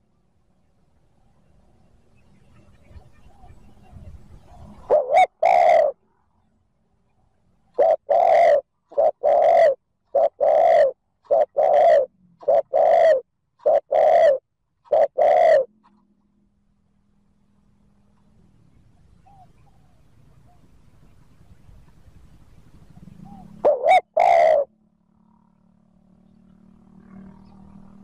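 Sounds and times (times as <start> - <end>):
dove cooing: 2.7 - 6.0, 7.7 - 15.9, 19.2 - 20.7, 22.9 - 24.7.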